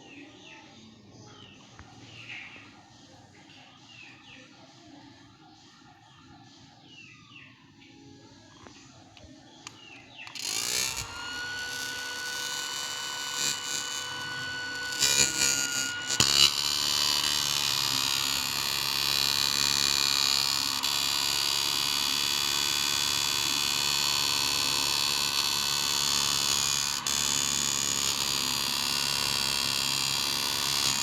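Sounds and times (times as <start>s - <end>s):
fan buzzing drone: 10.2s - 31.0s.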